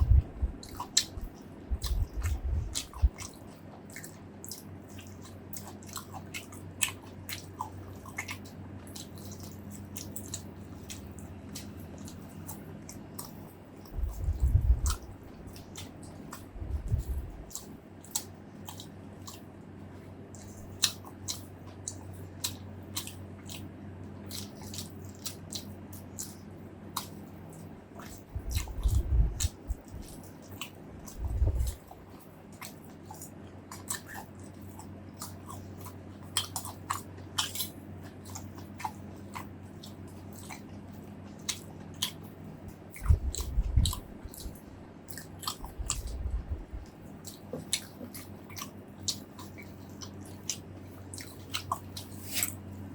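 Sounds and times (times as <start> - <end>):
dull low thumps: 0.0 - 0.6, 1.7 - 3.2, 13.9 - 15.4, 16.5 - 17.5, 28.2 - 30.0, 31.1 - 31.8, 43.0 - 44.8, 45.7 - 46.9
person chewing and crunching: 0.0 - 52.9.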